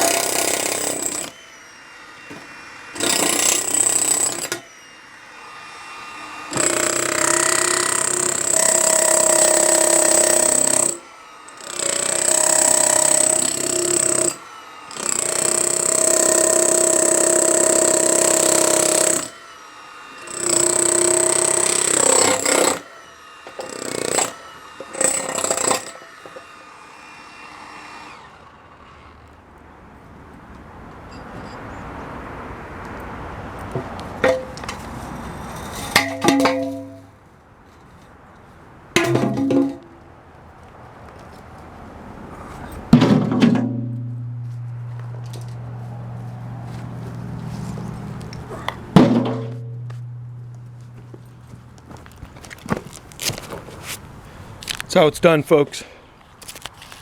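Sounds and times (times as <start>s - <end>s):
jackhammer breaking concrete: 0.0s - 1.4s, 2.3s - 4.7s, 6.5s - 19.4s, 20.2s - 26.6s.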